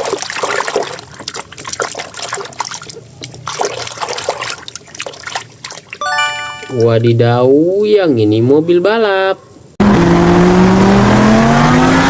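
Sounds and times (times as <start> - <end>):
water running and splashing: 0.0 - 6.0.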